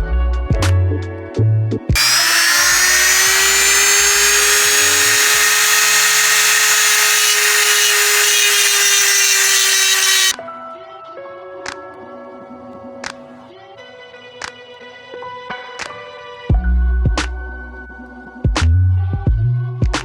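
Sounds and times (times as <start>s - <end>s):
rotary grinder whining: 2.0s - 10.3s.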